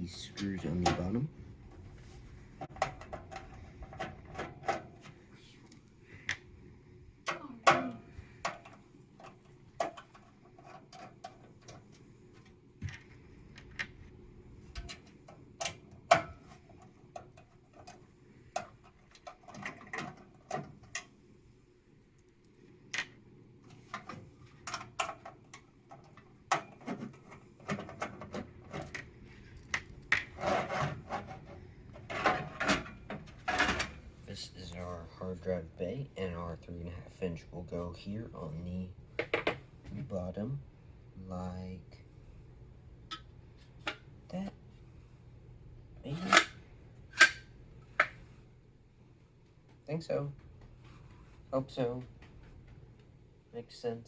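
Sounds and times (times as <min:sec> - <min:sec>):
metal scrapes: 0:30.3 - 0:32.8.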